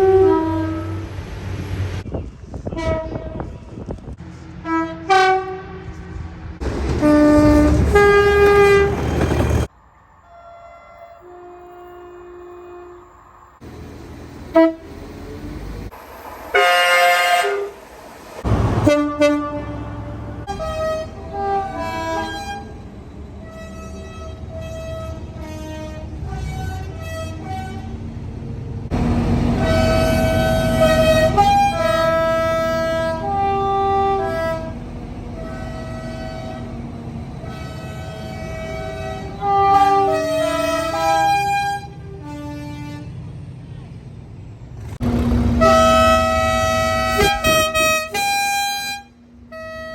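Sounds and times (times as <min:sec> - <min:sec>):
two-tone train horn blasts: 0:00.0 - 0:01.2, 0:02.7 - 0:03.5, 0:04.6 - 0:06.0, 0:07.0 - 0:09.1, 0:10.2 - 0:13.2, 0:14.5 - 0:15.0, 0:16.5 - 0:17.8, 0:18.5 - 0:28.0, 0:28.9 - 0:43.3, 0:45.0 - 0:49.9
passing train rumble: 0:00.0 - 0:49.9.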